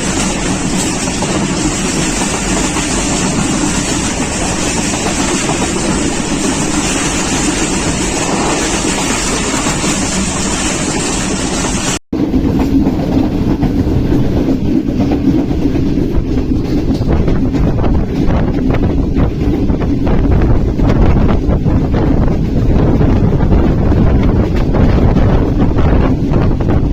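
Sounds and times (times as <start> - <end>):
train wheels rumbling on rails: 0.0 - 26.9.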